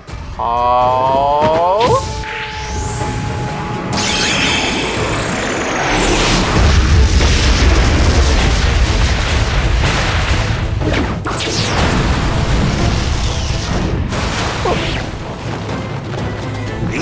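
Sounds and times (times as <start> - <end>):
deep rumbling explosion boom: 5.3 - 10.9.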